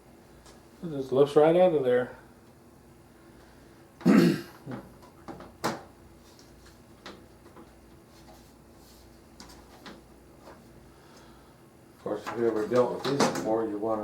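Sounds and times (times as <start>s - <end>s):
computer case parts clunking: 12.1s - 13.7s.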